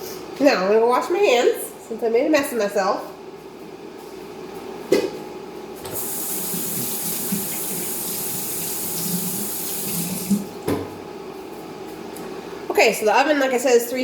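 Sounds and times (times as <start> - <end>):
kitchen faucet running: 5.9 - 10.5.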